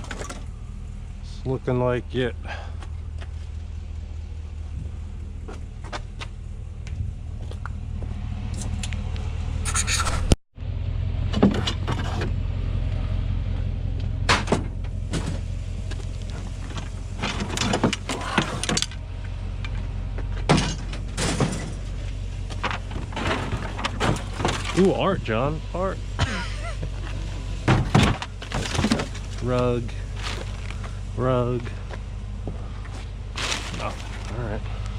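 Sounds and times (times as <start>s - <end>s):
junk clinking and rattling: 0.0s - 1.2s, 11.2s - 12.5s, 13.5s - 25.2s, 26.0s - 34.9s
vehicle engine idling: 0.0s - 34.9s.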